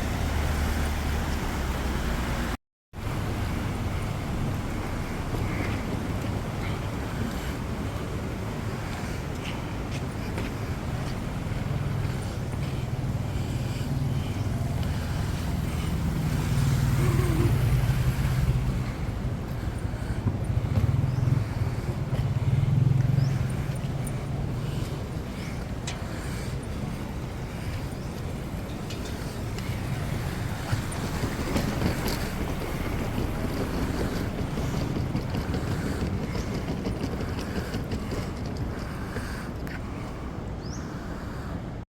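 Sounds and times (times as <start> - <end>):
traffic engine hum: 0.0 - 41.8
wind buffeting microphone: 0.0 - 41.8
vehicle passing close: 11.2 - 39.7.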